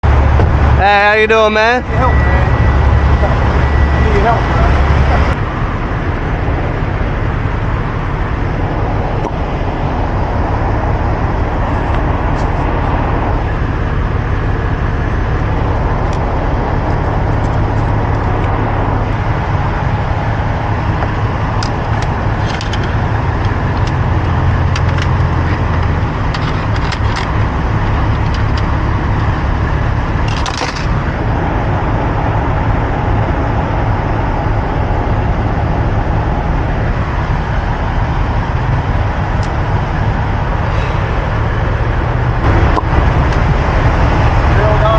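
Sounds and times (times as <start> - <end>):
vehicle engine idling: 0.0 - 44.9.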